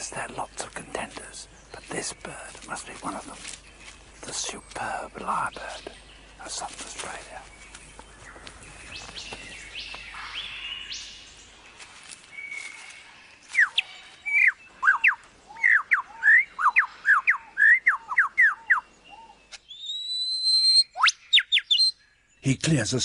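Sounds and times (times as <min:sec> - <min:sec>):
lyrebird whistling song: 0:12.3 - 0:22.3.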